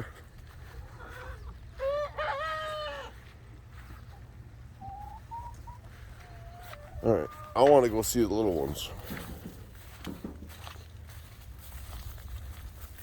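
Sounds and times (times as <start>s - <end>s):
soft chicken calls: 0.3s - 8.0s.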